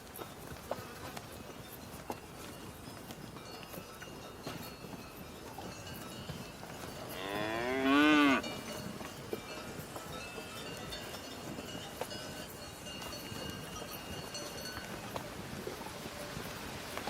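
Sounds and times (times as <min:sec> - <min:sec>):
cow mooing: 0:07.1 - 0:08.5.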